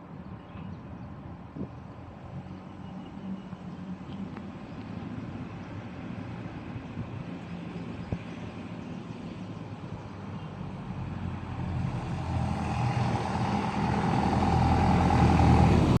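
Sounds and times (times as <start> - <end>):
vehicle engine running: 10.4 - 16.0.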